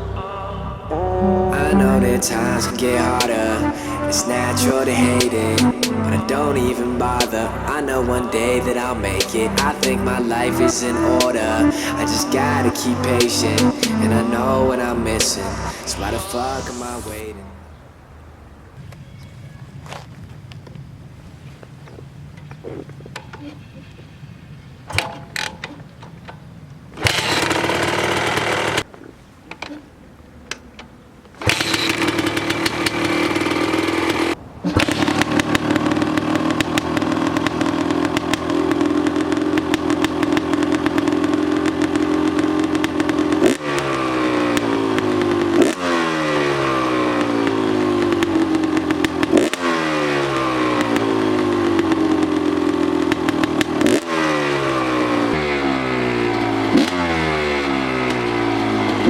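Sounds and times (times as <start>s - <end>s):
two-stroke motorcycle engine running: 27.0s - 28.8s, 31.4s - 59.0s.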